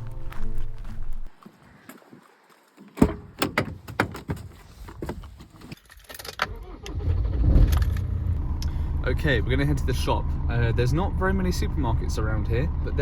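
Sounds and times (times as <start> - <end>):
van engine starting and running: 6.3 - 13.0.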